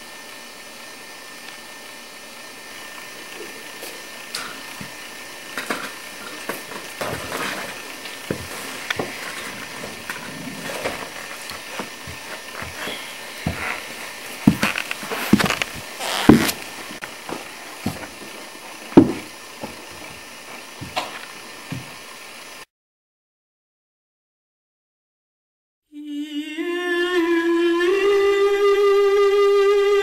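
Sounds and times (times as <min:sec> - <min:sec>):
steady hiss: 0:00.0 - 0:22.7.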